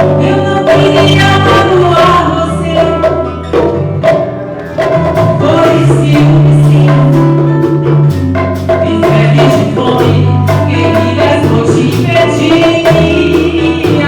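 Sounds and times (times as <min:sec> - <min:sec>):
bass line: 0:00.0 - 0:14.0
live acoustic band music: 0:00.0 - 0:14.0
percussion strikes: 0:00.0 - 0:14.0.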